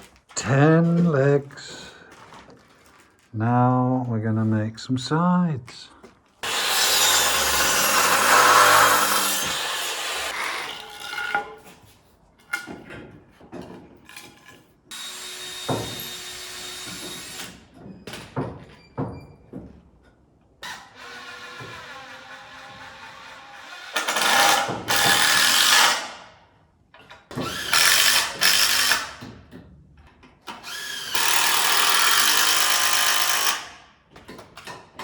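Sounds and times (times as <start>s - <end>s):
power saw cutting wood: 6.4s - 11.5s, 14.9s - 17.6s, 20.6s - 26.2s, 30.6s - 33.7s.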